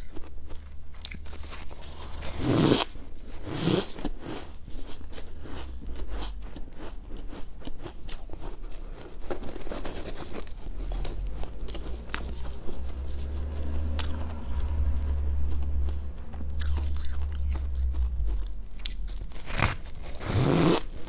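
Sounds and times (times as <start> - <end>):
crunching frost chewing: 0.0 - 21.0
low rumble: 10.5 - 21.0.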